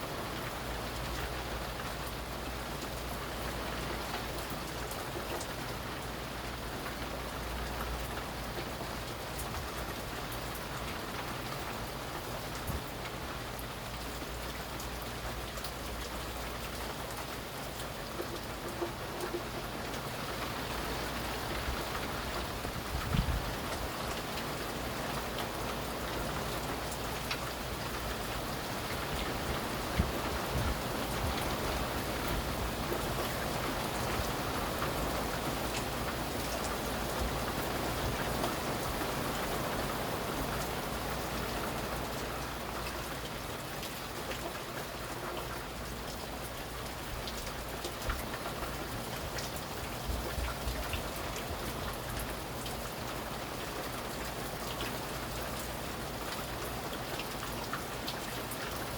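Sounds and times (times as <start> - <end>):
heavy rain pattering: 0.0 - 58.9.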